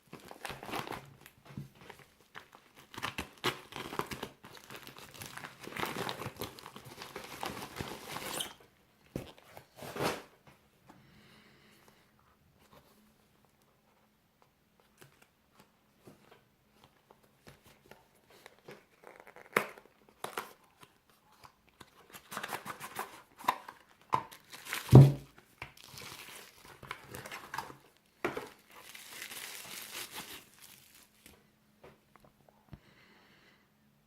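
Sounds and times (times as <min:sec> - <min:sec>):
wrapping crinkling and tearing: 0:00.0 - 0:08.6, 0:16.8 - 0:31.4.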